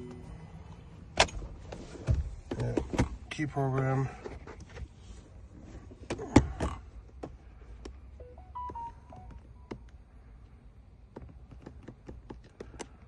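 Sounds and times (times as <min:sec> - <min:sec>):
short electronic beeps: 0:08.2 - 0:09.7
button clicks and taps: 0:08.4 - 0:09.8.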